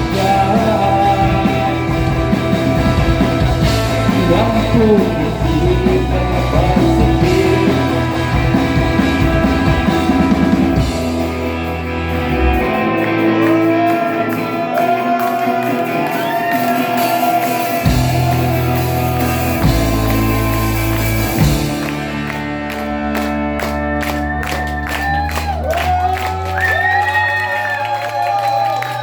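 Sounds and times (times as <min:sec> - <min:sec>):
sliding electric guitar lines: 0:00.0 - 0:16.2
rock band playing instrumental: 0:00.0 - 0:27.0.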